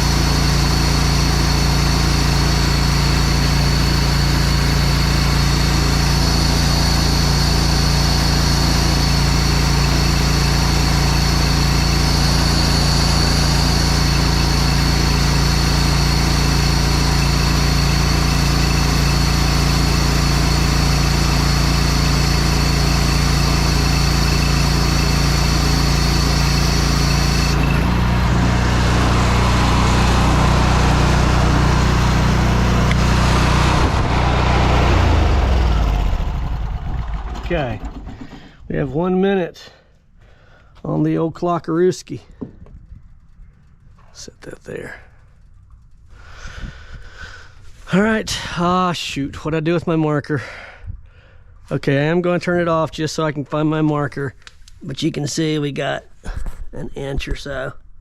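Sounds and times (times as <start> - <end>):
pressure washer engine running: 0.0 - 39.2.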